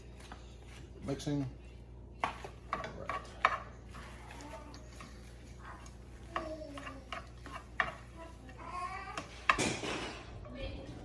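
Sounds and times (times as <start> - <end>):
utensil scraping a pan: 2.2 - 9.6.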